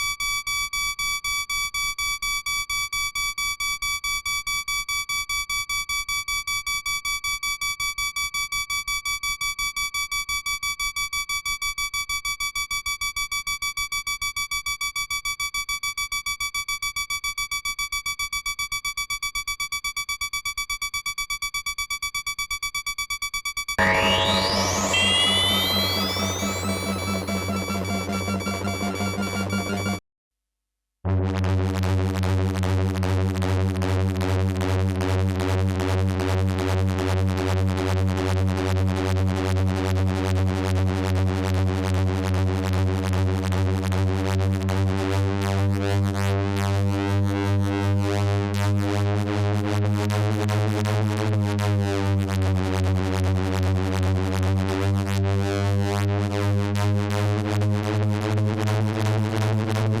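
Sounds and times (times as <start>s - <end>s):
phaser-like shimmer sweep: 23.8s - 30.0s
pulsing synthesizer drone: 23.8s - 30.0s.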